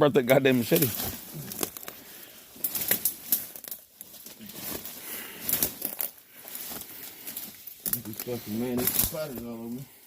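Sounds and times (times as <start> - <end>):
brush rustling underfoot: 0.2 - 10.0
twigs snapping: 0.6 - 9.4.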